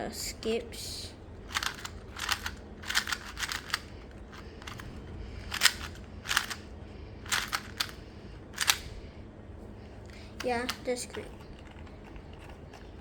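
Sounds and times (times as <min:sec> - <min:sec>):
plastic puzzle cube clacking: 0:01.5 - 0:04.8, 0:05.4 - 0:06.6, 0:07.3 - 0:08.0, 0:08.6 - 0:08.9.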